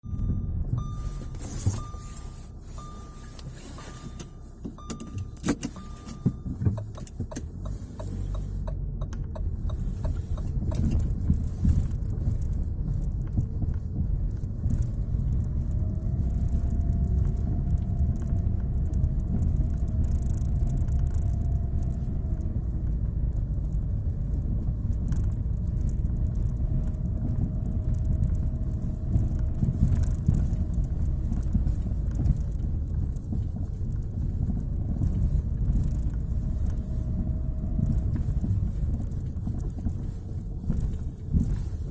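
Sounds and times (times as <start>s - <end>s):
car warning chime beeping: 0.0s - 10.8s
tyre and road rumble: 0.0s - 41.9s.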